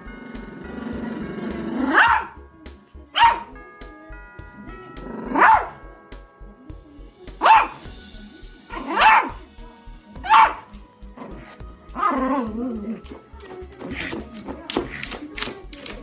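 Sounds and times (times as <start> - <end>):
background music with steady beat: 0.0 - 16.0
dog barking: 1.6 - 2.4, 3.1 - 3.5, 5.2 - 5.8, 7.4 - 7.8, 8.7 - 9.4, 10.2 - 13.2.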